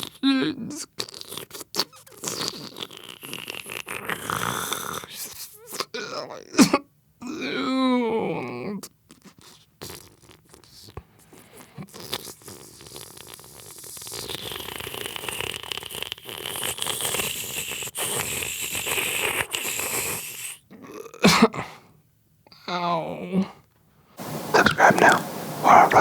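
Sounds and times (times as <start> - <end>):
scratchy crackling noise: 24.2 - 26.0.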